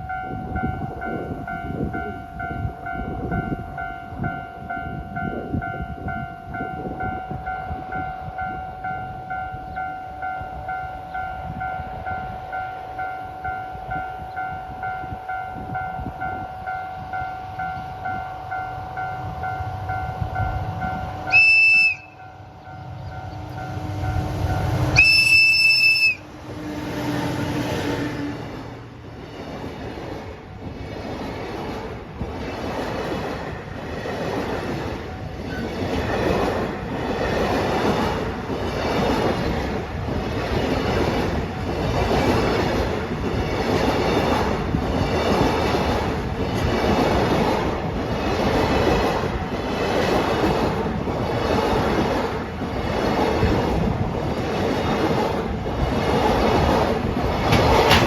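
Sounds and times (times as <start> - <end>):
diesel locomotive rumbling: 0.0 - 58.0
locomotive horn blasts: 21.2 - 22.2, 24.9 - 26.3.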